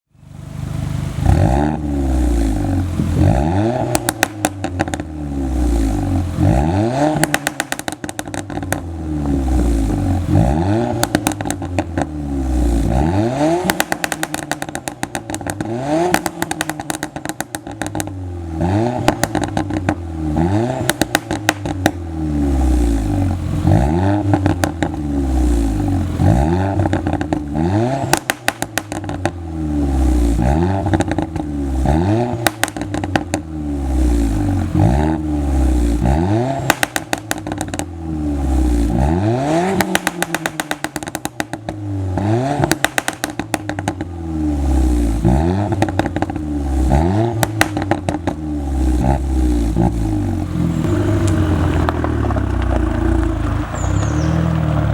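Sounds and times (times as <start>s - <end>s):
car engine revving: 0.4s - 54.9s
exhaust pops and bangs: 3.0s - 5.2s, 6.4s - 9.3s, 10.3s - 12.1s, 13.5s - 18.2s, 18.8s - 22.2s, 23.6s - 25.0s, 26.2s - 29.4s, 30.4s - 33.5s, 36.0s - 38.1s, 38.9s - 44.2s, 45.2s - 54.6s.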